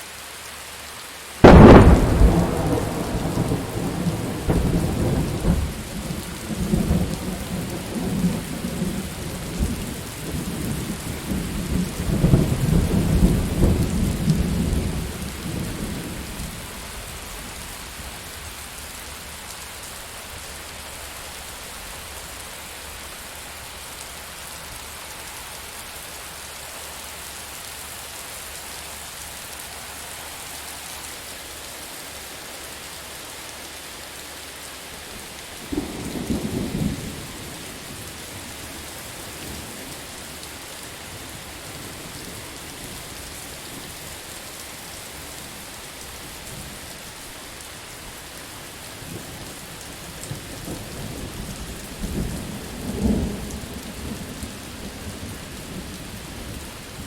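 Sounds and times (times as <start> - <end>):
heavy rain: 0.0 - 57.0
thunder crack and rumble: 1.4 - 16.2.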